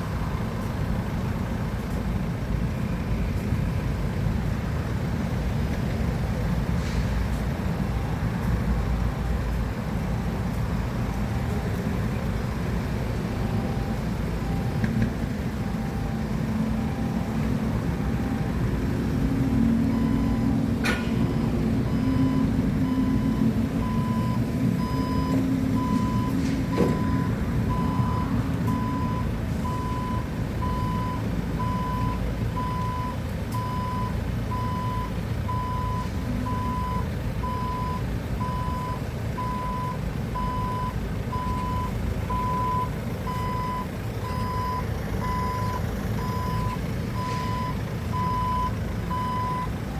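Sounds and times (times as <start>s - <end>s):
forklift engine running: 0.0s - 49.9s
reversing alarm beeping: 13.3s - 49.9s.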